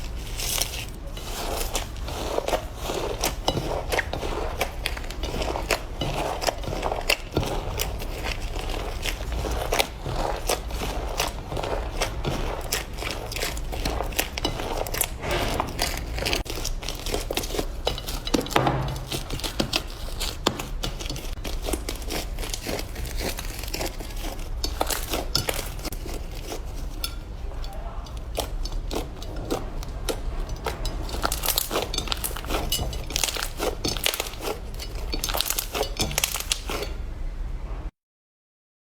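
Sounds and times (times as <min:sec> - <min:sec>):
slime crackling and popping: 0:00.0 - 0:27.4, 0:28.0 - 0:36.9.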